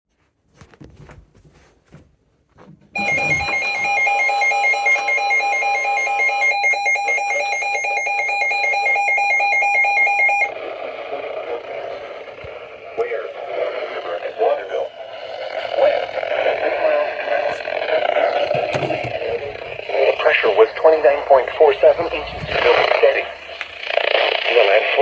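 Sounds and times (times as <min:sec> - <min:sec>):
electronic alarm tone: 0:03.0 - 0:10.6, 0:18.3 - 0:23.9.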